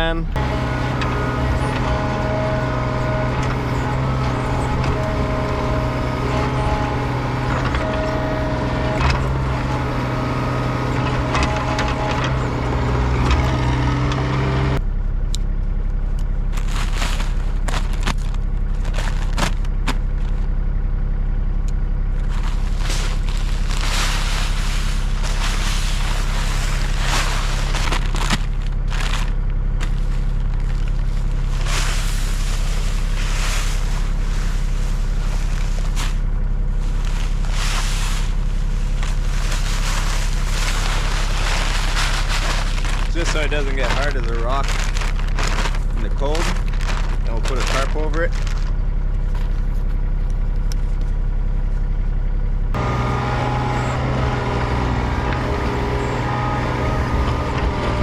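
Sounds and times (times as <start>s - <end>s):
engine running: 0.0s - 58.0s
knocks and scrapes: 0.4s - 14.8s, 52.8s - 58.0s.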